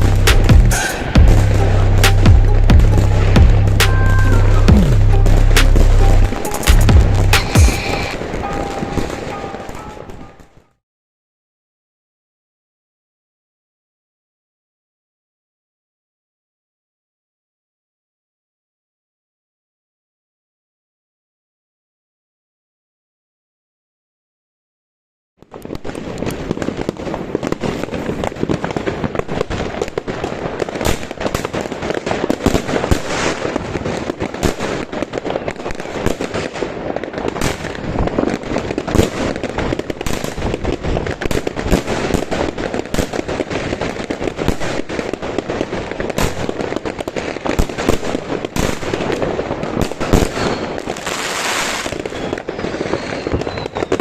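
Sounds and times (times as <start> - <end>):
firework shots and bursts: 0.0 - 10.4, 25.4 - 54.0
firework crackling: 0.0 - 10.8, 25.4 - 54.0.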